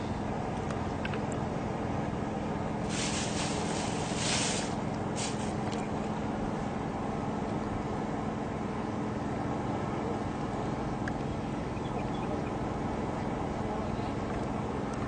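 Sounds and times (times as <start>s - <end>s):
rushing hiss: 2.8s - 5.6s.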